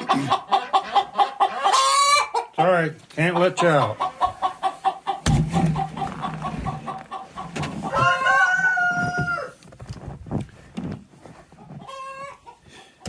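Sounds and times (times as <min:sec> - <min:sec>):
chickens clucking: 0:00.0 - 0:09.7, 0:11.4 - 0:13.0
rooster crowing: 0:07.8 - 0:09.6.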